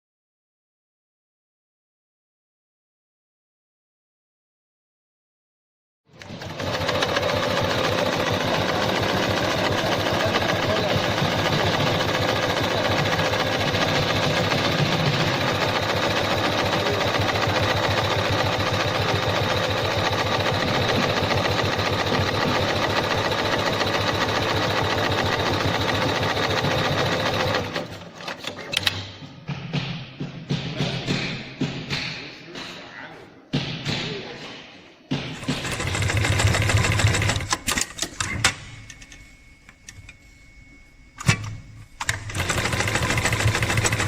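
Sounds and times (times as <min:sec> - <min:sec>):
sewing machine stitching: 0:06.2 - 0:28.9, 0:35.4 - 0:39.0, 0:41.2 - 0:44.0.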